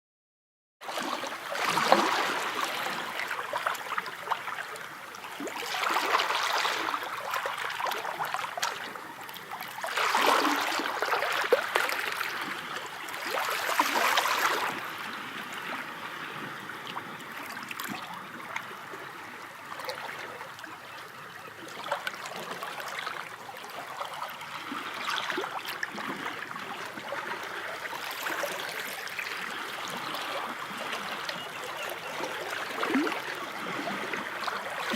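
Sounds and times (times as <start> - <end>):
sea waves washing: 0.9 - 19.4.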